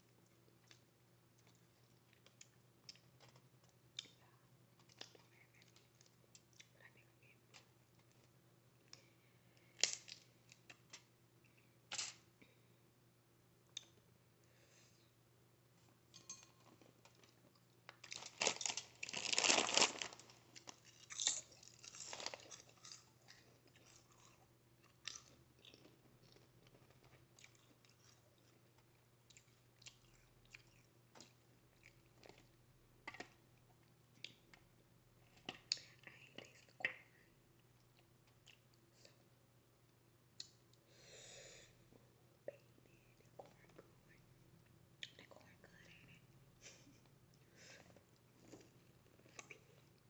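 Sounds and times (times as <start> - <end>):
chewing with crunches: 16.7 - 34.6.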